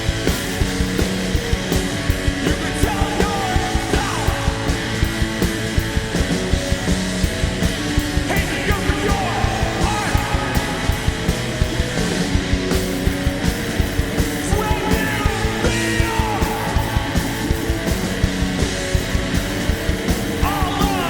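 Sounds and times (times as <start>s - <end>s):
fast drum beat: 0.0s - 21.0s
punk rock band playing: 0.0s - 21.0s
singer shouting: 8.2s - 11.2s, 14.4s - 17.8s, 20.4s - 21.0s.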